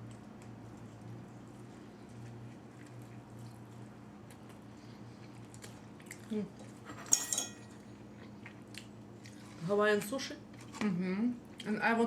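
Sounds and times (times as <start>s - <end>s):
cutlery clinking against a dish: 6.9s - 7.8s
food and utensils clicking: 6.9s - 7.8s.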